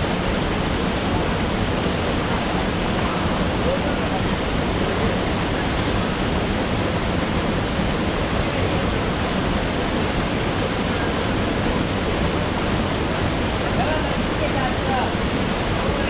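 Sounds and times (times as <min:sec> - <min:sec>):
waterfall rushing: 0:00.0 - 0:16.0.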